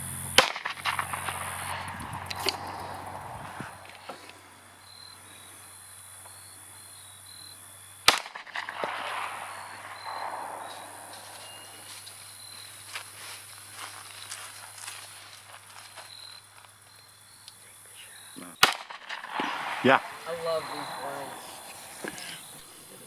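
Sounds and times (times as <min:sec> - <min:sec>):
insects chirping: 0:00.0 - 0:23.0
gunshot with echo: 0:00.4 - 0:03.8, 0:08.1 - 0:12.0, 0:18.6 - 0:22.2.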